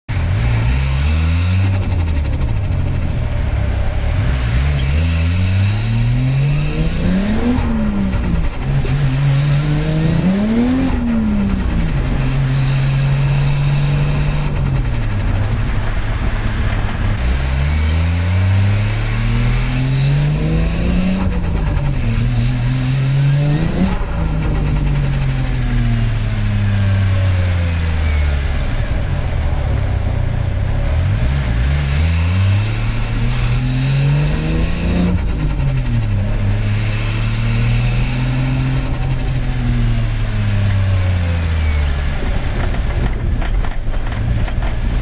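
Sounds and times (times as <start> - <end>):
car engine revving hard: 0.1 - 45.0.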